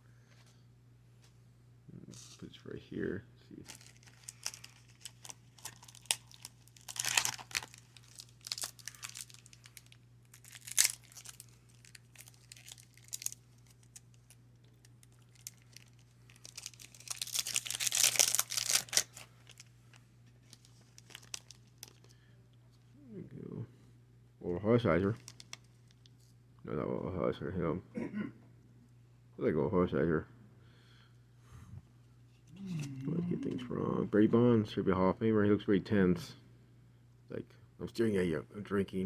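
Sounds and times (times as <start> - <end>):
foil wrapper tearing and crinkling: 3.7 - 19.7, 20.4 - 22.1, 25.2 - 26.1.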